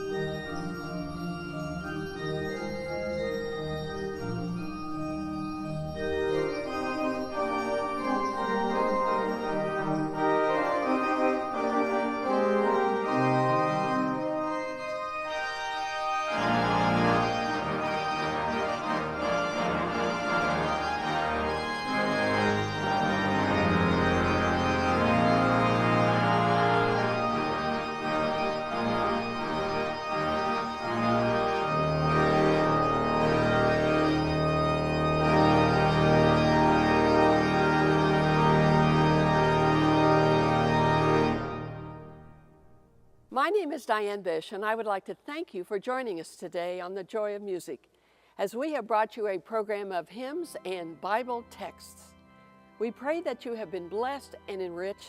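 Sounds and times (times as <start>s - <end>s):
deep organ pedal bass: 0.0s - 42.2s
pipe organ chords: 0.0s - 43.2s, 50.4s - 55.0s.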